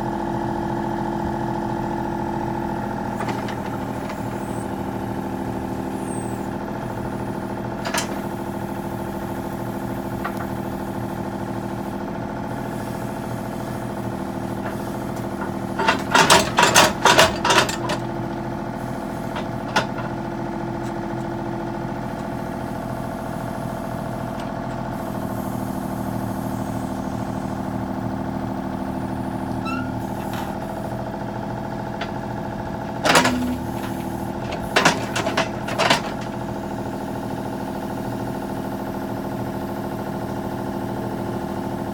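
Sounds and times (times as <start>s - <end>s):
excavator diesel engine running: 0.0s - 41.9s
sharp metal clanks and knocks: 15.4s - 18.1s, 33.0s - 36.3s.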